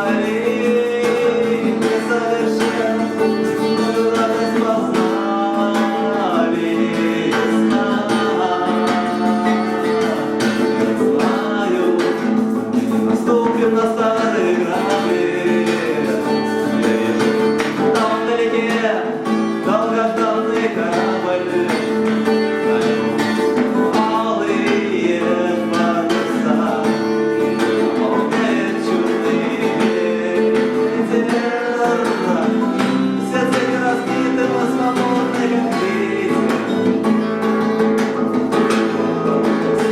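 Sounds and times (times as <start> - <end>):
acoustic guitar strumming: 0.0 - 39.9
person singing: 0.0 - 39.9.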